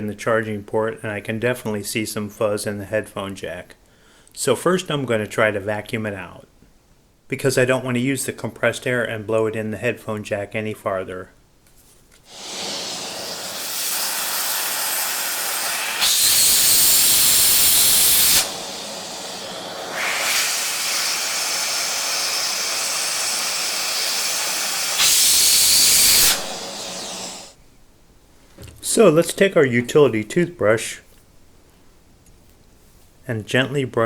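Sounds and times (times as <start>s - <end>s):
vacuum cleaner running: 12.3s - 27.6s.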